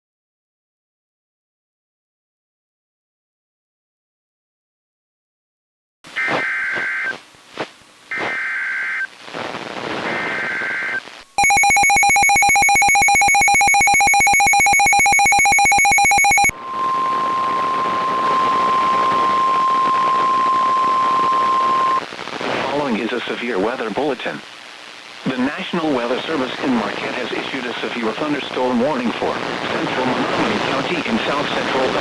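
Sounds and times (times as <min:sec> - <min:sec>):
radio hiss: 0:06.1 - 0:16.5, 0:19.1 - 0:32.0
buzzing two-tone attention signal: 0:10.2 - 0:22.0
warbling data bursts: 0:10.3 - 0:16.5
steady single-tone alarm: 0:11.4 - 0:22.0.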